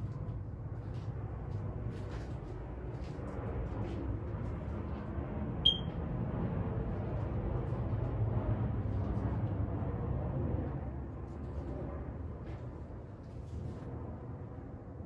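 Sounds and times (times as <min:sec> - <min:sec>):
ceiling fan humming: 0:05.6 - 0:05.9
short high-pitched beep: 0:05.7 - 0:05.9.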